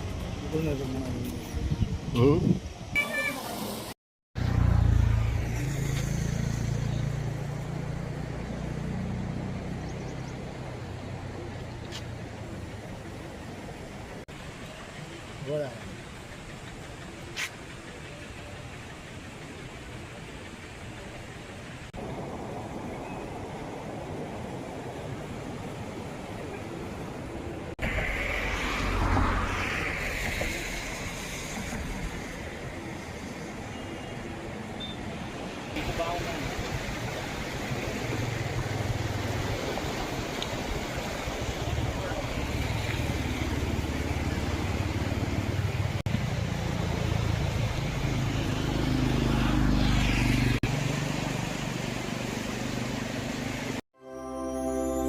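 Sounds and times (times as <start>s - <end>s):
wind rumbling on microphone: 0.0s - 2.9s
vehicle engine rumbling: 4.4s - 53.8s
floodwater rushing: 6.2s - 53.8s.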